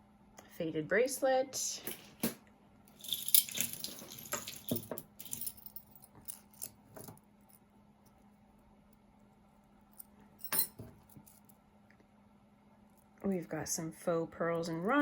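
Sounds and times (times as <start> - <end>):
jewelry jingling and clinking: 2.9 - 7.7, 9.8 - 11.6.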